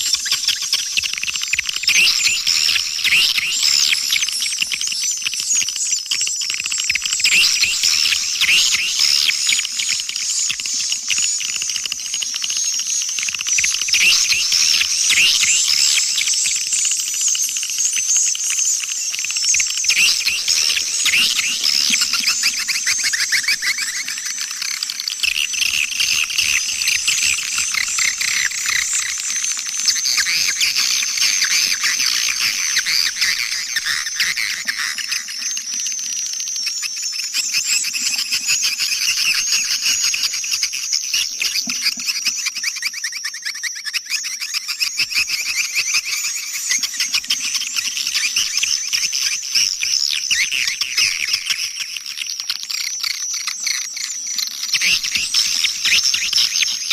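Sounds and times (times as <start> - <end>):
swiftlets twittering chirps: 0.0 - 56.9.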